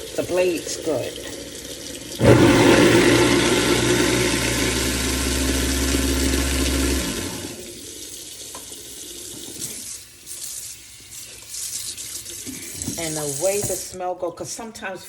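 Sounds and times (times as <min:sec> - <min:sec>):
garbage disposal motor humming: 0:00.0 - 0:10.1
tap water running into sink: 0:00.0 - 0:14.0.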